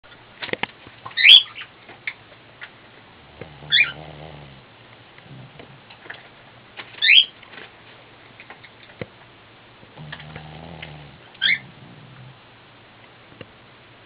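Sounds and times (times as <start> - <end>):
dog snoring: 3.2 - 6.0, 9.8 - 12.6.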